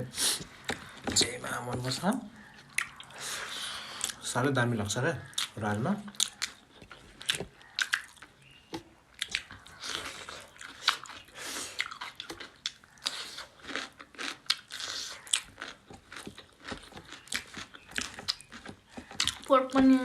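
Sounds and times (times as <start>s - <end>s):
people chewing and crunching food: 0.0s - 20.0s
wet mouth clicks and smacks: 5.3s - 11.2s.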